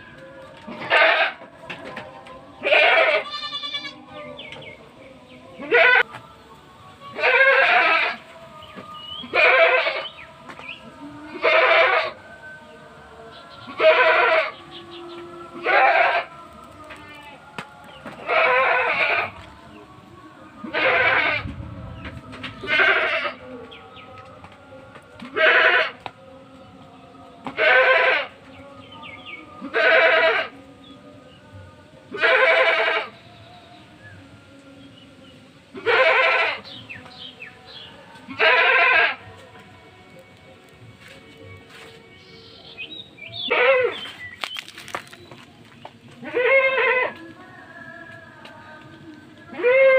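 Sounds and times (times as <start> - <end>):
goats bleating: 0.6 - 1.6, 2.6 - 4.1, 5.6 - 6.2, 7.1 - 8.3, 9.1 - 10.2, 11.3 - 12.2, 13.6 - 14.7, 15.5 - 19.5, 20.6 - 21.4, 22.6 - 23.5, 25.2 - 26.2, 27.4 - 28.4, 29.6 - 30.6, 32.1 - 33.2, 35.7 - 36.8, 38.2 - 39.4, 43.2 - 45.2, 46.1 - 47.4, 49.5 - 49.9.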